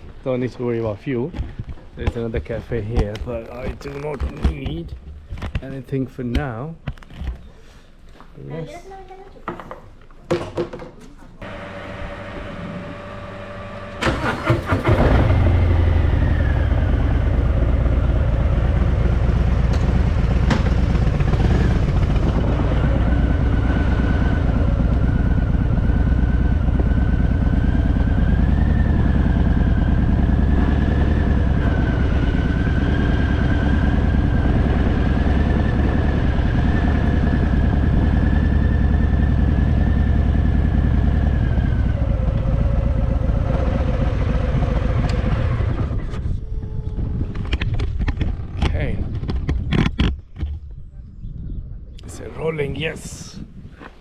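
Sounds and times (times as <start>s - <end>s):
motorcycle engine starting and idling: 11.4s - 48.9s.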